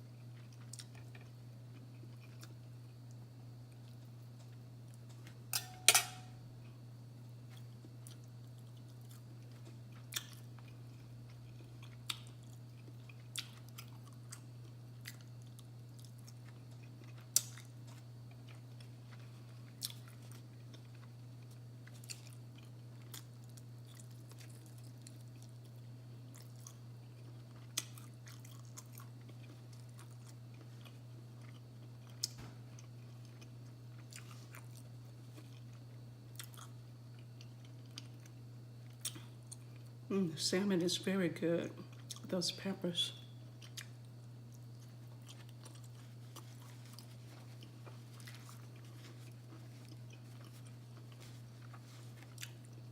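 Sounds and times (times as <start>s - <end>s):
steady low hum: 0.0s - 52.9s
person chewing: 0.2s - 3.1s, 7.5s - 39.9s, 41.9s - 42.3s, 43.6s - 52.9s
cutlery clinking on a plate: 5.6s - 6.4s.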